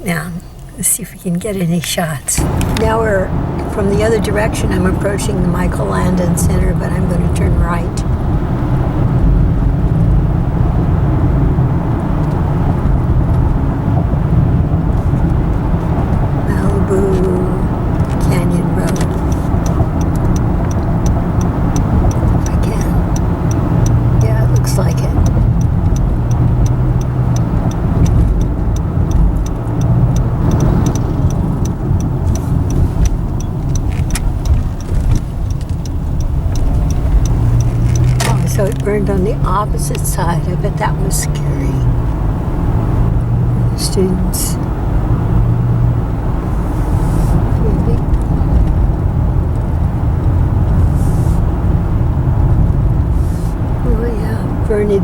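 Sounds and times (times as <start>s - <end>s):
road and engine noise in car: 0.0s - 55.0s
light regular ticking: 11.0s - 44.0s.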